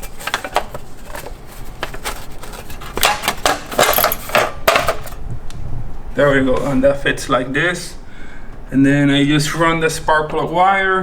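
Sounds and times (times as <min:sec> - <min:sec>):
metal plate clinking and scraping: 0:02.0 - 0:05.2.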